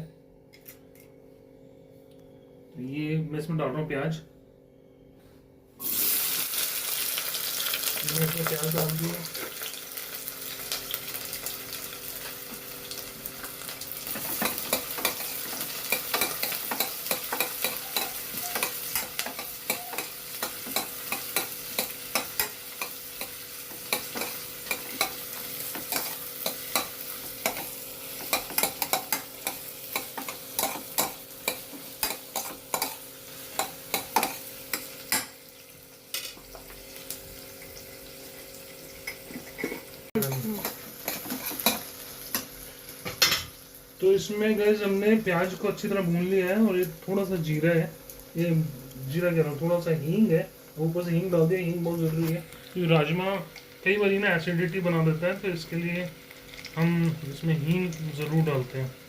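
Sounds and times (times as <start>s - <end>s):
onions sizzling in oil: 5.8s - 59.0s
spoon scraping pan: 14.3s - 35.3s.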